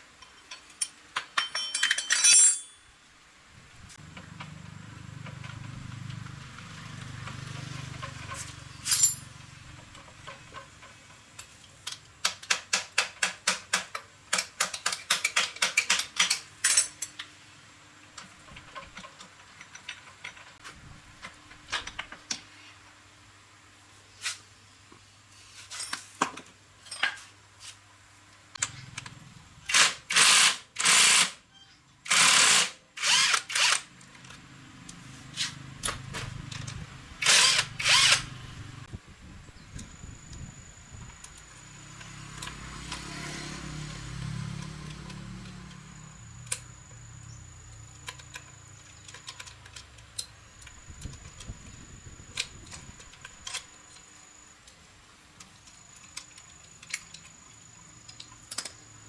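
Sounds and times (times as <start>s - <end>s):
power tool bursts: 29.7s - 31.4s, 32.1s - 33.9s, 37.2s - 38.4s.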